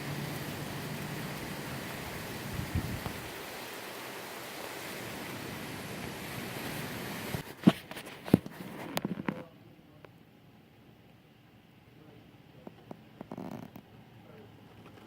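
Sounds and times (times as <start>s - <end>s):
rain: 0.0s - 15.0s
gusty wind: 1.9s - 3.6s.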